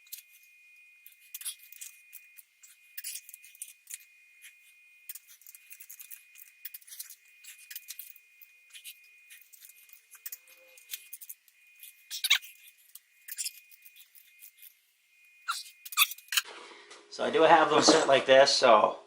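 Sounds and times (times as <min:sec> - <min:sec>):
metallic clicks and scrapes: 0:01.0 - 0:14.8.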